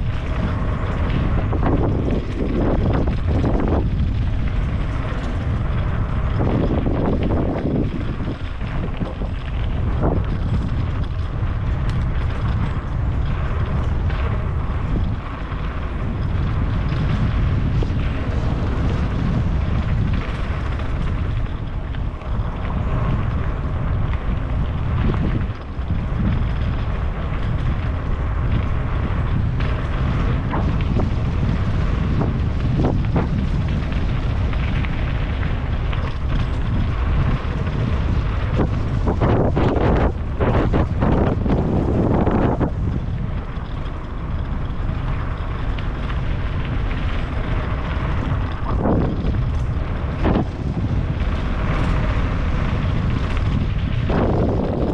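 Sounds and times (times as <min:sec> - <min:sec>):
wind buffeting microphone: 0:00.0 - 0:54.9.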